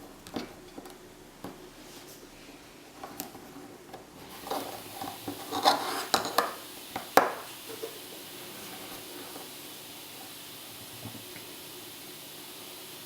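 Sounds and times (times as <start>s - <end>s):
faint steady hiss: 0.0s - 13.0s
hard objects rubbing and scraping: 3.3s - 6.6s.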